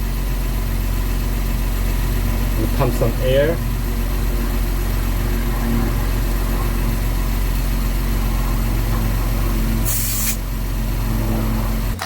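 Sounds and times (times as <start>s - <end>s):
air hiss: 9.8s - 10.4s
tyre inflator pump running: 9.8s - 10.5s.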